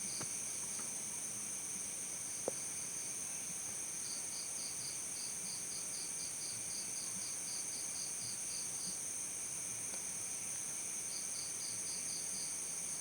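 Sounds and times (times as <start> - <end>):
cricket chirps: 10.2 - 13.0.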